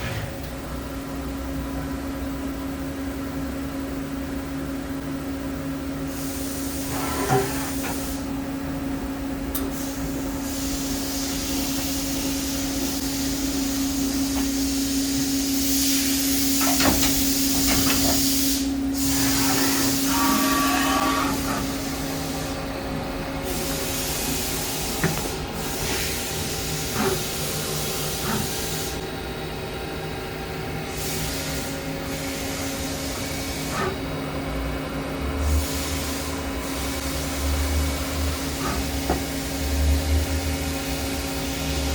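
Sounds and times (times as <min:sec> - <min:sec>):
machining center humming: 0:00.0 - 0:41.9
hiss: 0:09.6 - 0:22.6, 0:23.4 - 0:29.0, 0:30.9 - 0:34.0, 0:35.4 - 0:37.4.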